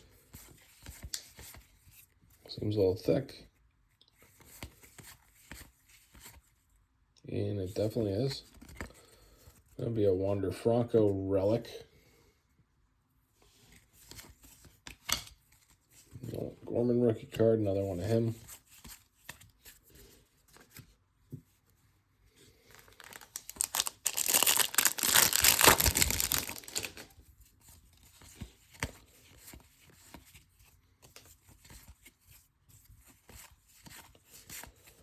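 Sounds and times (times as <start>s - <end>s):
cards and wrapper rustling: 22.5s - 27.3s
wrapper ripping and crinkling: 22.7s - 27.1s.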